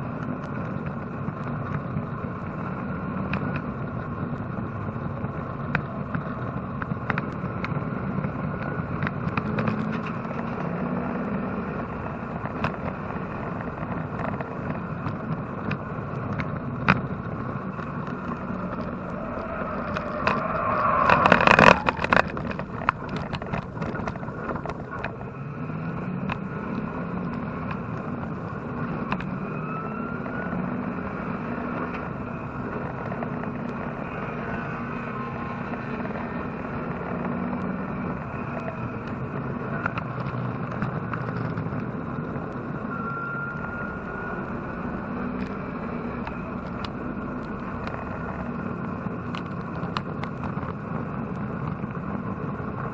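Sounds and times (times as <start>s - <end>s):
race car engine revving: 16.8s - 24.9s.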